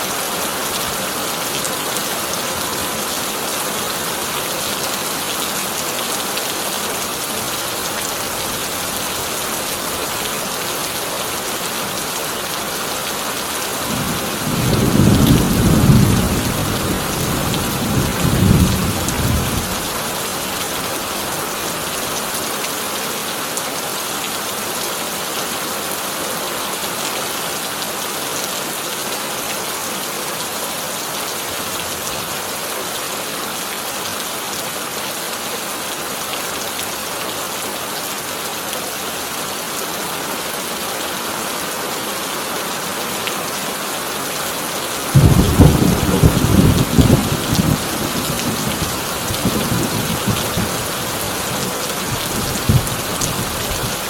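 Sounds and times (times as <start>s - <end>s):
heavy rain on a tin roof: 0.0s - 54.0s
thunder rumble: 45.2s - 50.9s.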